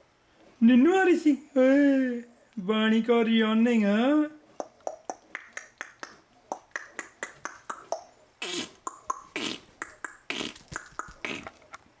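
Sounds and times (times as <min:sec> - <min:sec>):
rapid sharp clicks: 0:08.8 - 0:11.7.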